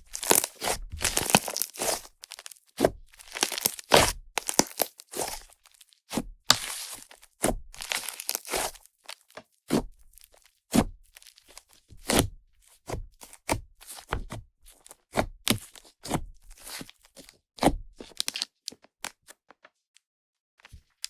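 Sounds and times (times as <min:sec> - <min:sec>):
slime squished by hand: 0:00.0 - 0:05.5, 0:07.8 - 0:08.8
wet pops and crackles: 0:03.3 - 0:04.9.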